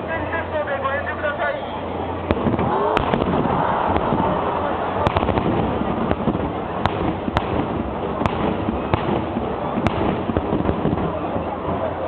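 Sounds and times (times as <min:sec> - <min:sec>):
fireworks booming: 0:02.2 - 0:12.0
sharp firework cracks: 0:02.3 - 0:11.9.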